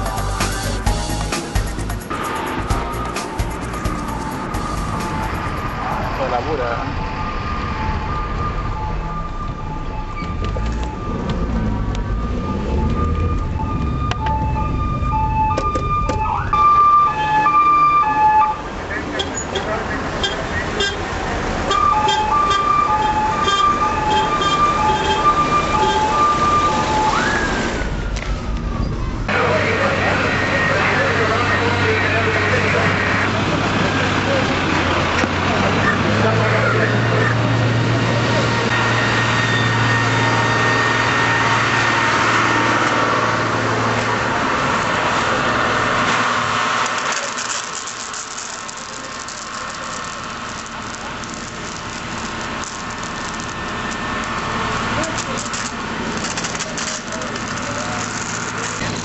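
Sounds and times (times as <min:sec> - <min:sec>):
street and engine rumble: 0:00.0 - 0:59.0
two-tone hi-lo siren: 0:03.2 - 0:18.8, 0:21.7 - 0:28.1, 0:38.6 - 0:42.6
crackling hiss: 0:46.8 - 0:59.0.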